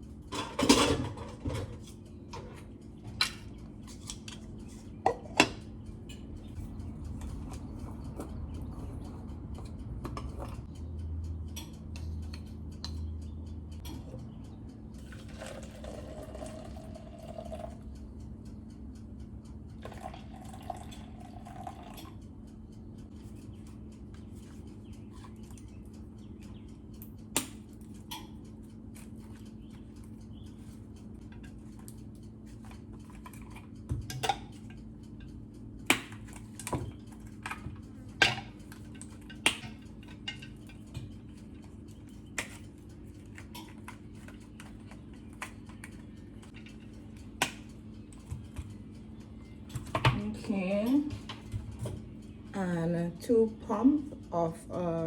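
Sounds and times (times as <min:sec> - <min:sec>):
low appliance hum: 0:00.0 - 0:55.0
dishes and utensils clinking: 0:00.3 - 0:05.7, 0:36.2 - 0:41.3.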